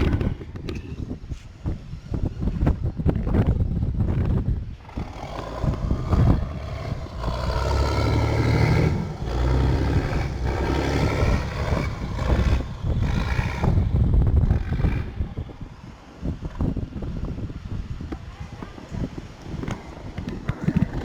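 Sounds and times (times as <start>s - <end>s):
motor engine running: 4.8s - 15.6s.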